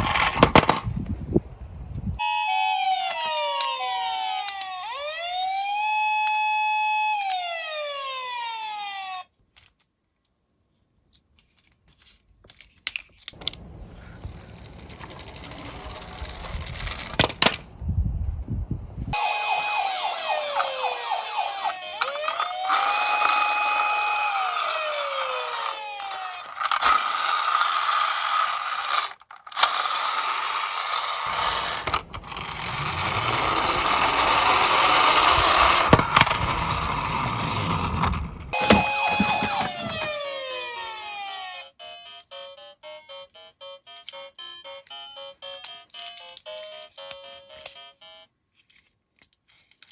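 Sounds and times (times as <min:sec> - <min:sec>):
toy cars rattling down a slope: 0:00.0 - 0:00.9, 0:11.4 - 0:17.6, 0:19.4 - 0:41.5
toy electronic sirens: 0:02.2 - 0:09.4, 0:19.1 - 0:48.3.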